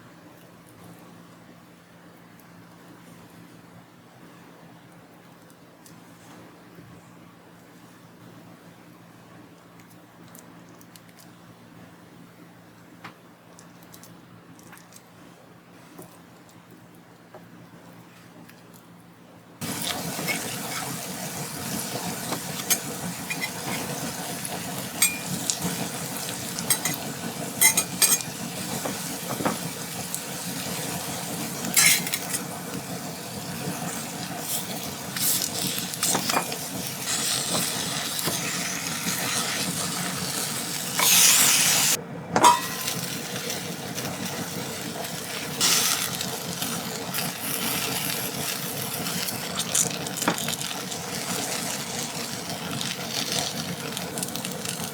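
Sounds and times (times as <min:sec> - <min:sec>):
utensil scraping a pan: 0:19.6 - 0:24.4, 0:25.0 - 0:25.7
food sizzling in a frying pan: 0:19.6 - 0:54.9.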